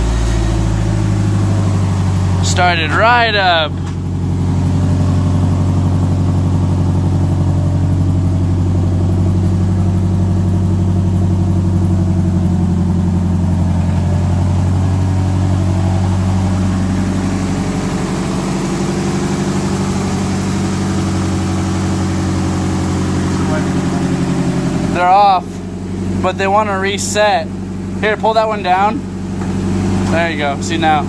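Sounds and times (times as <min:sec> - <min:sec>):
car engine idling: 0:00.0 - 0:31.0.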